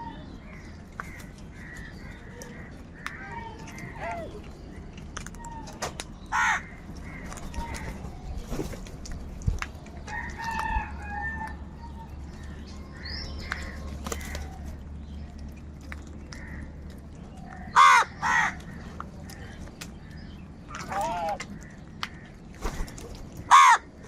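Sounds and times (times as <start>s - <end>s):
other birds calling: 0.0s - 24.0s
crows cawing: 1.0s - 4.2s, 6.3s - 8.0s, 16.4s - 16.8s, 17.6s - 19.5s, 20.8s - 24.0s.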